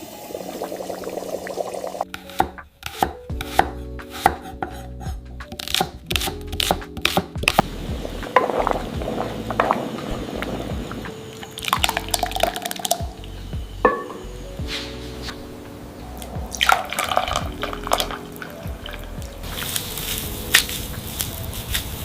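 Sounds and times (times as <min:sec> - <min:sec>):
knife chopping on cutting board: 0:02.2 - 0:04.9, 0:05.5 - 0:07.6.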